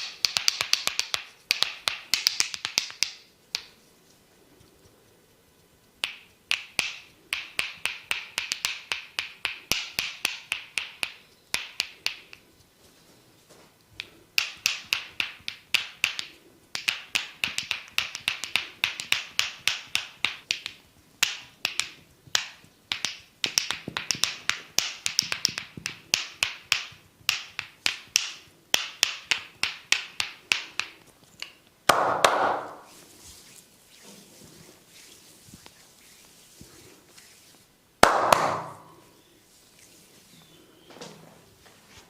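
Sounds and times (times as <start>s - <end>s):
hand slaps and taps: 0.0s - 3.8s, 6.0s - 12.4s, 14.0s - 33.0s, 38.0s - 39.0s.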